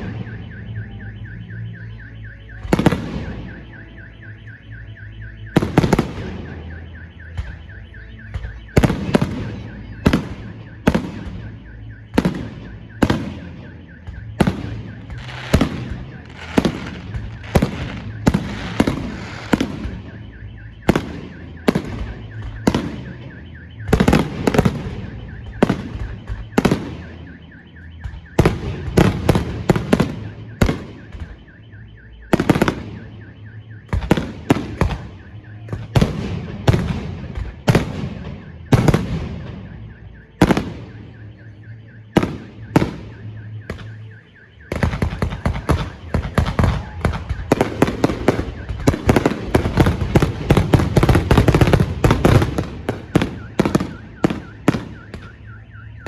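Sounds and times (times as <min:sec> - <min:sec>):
fireworks bursting with crackle: 0:12.1 - 0:27.3, 0:42.0 - 0:56.0.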